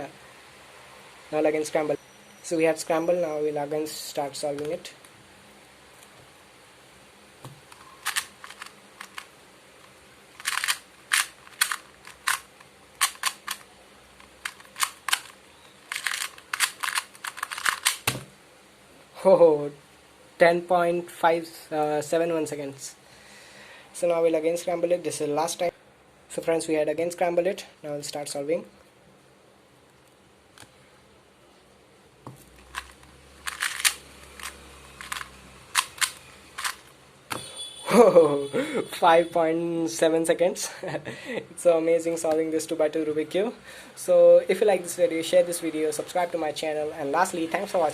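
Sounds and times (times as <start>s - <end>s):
puzzle cube plastic clicks: 7.6s - 18.3s, 32.6s - 36.9s.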